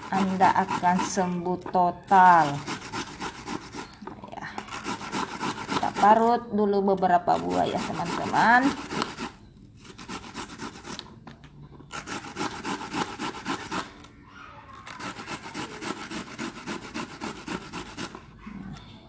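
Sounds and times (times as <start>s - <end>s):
fruit grated on a grater: 0.0s - 1.4s, 2.1s - 4.0s, 4.6s - 6.2s, 7.2s - 11.0s, 11.9s - 14.0s, 14.8s - 18.2s.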